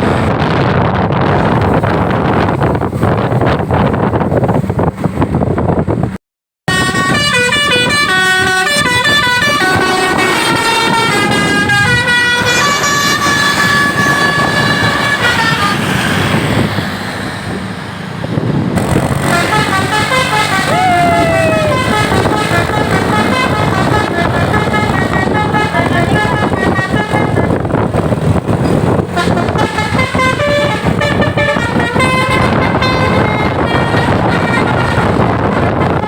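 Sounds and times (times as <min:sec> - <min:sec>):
traffic and engine noise: 0:00.0 - 0:36.0
wind and road noise: 0:00.0 - 0:36.0
bus musical horn melody: 0:06.7 - 0:16.4, 0:19.2 - 0:36.0.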